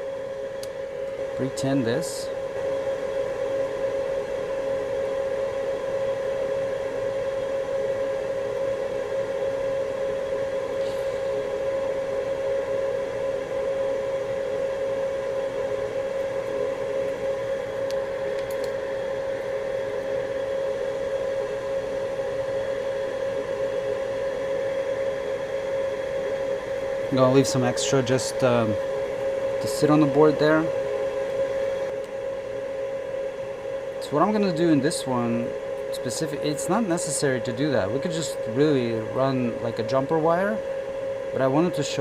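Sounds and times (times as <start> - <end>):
electric fan motor humming: 0.0 - 42.0.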